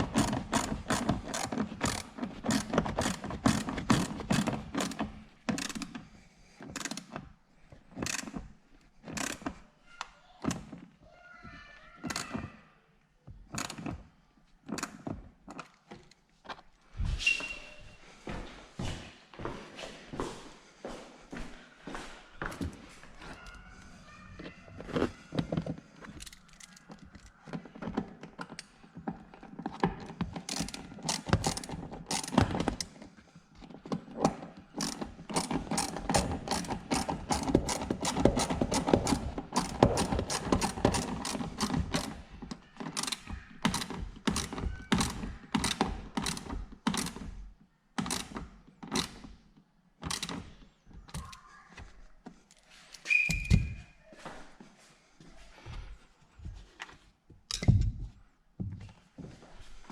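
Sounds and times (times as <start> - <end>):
ratchet wrench clicking: 30.5 - 32.4, 34.8 - 42.1, 43.0 - 47.1.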